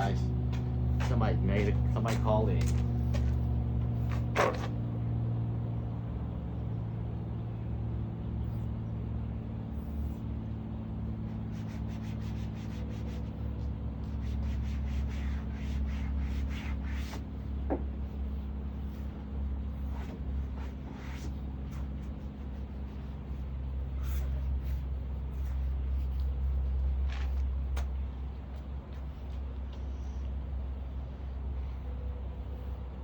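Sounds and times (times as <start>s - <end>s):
low mechanical hum: 0.0s - 33.0s.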